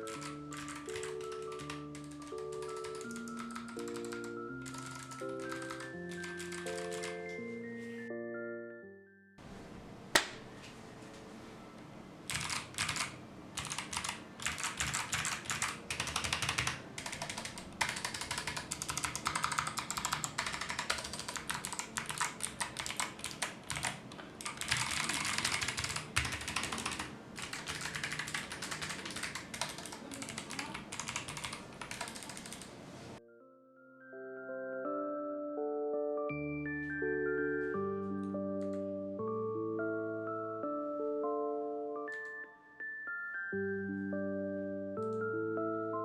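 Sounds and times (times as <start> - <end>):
mechanical keyboard typing clicks: 0.0 - 7.3, 12.3 - 32.7.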